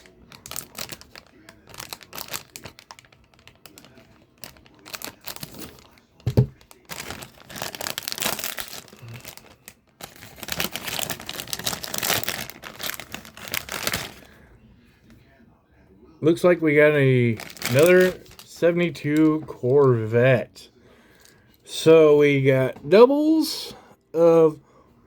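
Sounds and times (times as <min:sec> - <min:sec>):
plastic packaging tearing and crinkling: 0:00.0 - 0:14.3, 0:17.0 - 0:19.5.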